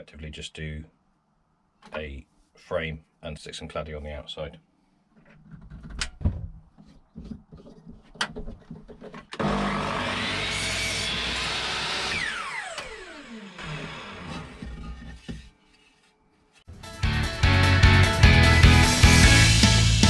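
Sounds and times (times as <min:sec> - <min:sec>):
electric saw cutting wood: 0:09.4 - 0:15.0.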